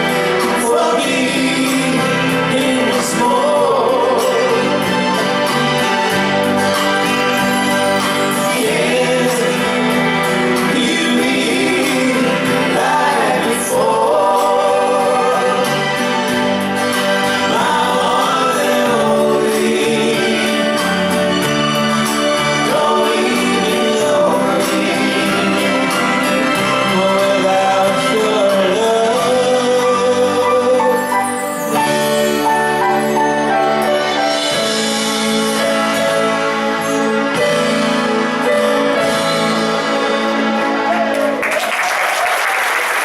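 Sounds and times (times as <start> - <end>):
person singing: 0.0 - 6.2, 8.0 - 21.4, 22.2 - 36.6
live pop band music: 0.0 - 41.8.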